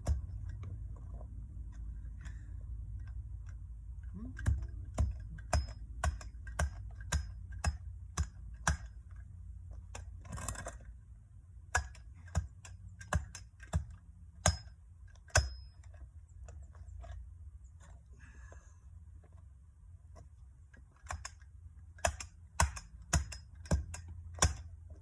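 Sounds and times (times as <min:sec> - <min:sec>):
hand tamper striking asphalt: 0:00.0 - 0:00.6, 0:04.4 - 0:09.2, 0:11.7 - 0:16.0, 0:21.0 - 0:24.8.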